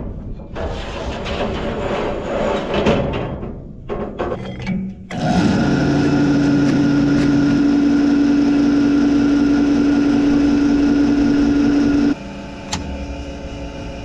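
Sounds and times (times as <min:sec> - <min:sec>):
engine droning: 0:05.1 - 0:14.0.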